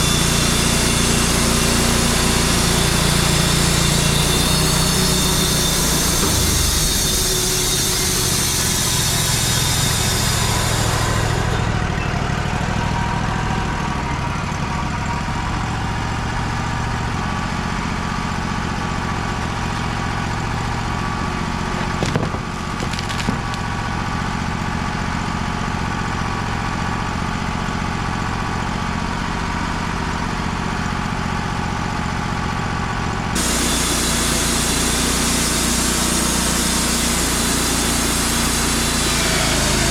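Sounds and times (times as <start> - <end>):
band saw blade cutting log: 0.0 - 11.6, 21.2 - 24.2, 33.4 - 39.9
sawmill engine running: 0.0 - 39.9
short knocks: 21.8 - 23.7.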